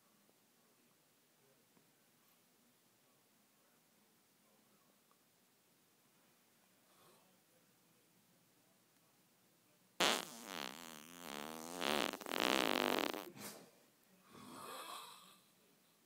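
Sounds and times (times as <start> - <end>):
soft breathy sound: 6.1 - 7.6, 13.3 - 16.0
long loud fart: 10.0 - 13.3.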